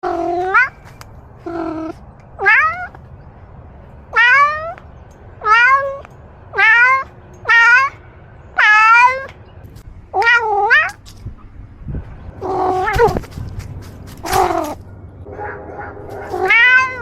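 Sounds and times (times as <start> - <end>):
cat meowing: 0.0 - 0.8, 1.4 - 3.0, 4.1 - 4.8, 5.4 - 8.0, 8.6 - 9.3, 10.2 - 11.0, 12.4 - 13.3, 14.2 - 14.8, 16.2 - 17.0.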